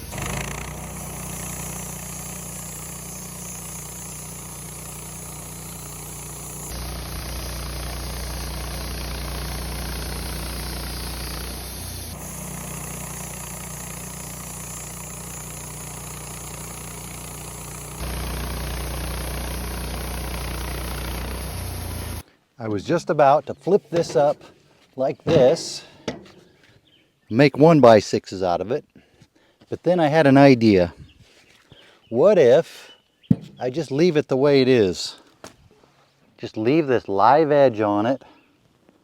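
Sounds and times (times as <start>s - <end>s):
sawmill milling a log: 0.0s - 22.2s.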